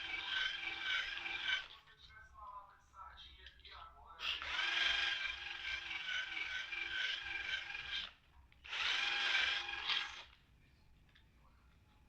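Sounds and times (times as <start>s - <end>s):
handheld power tool running: 0.0s - 1.7s, 4.2s - 10.4s.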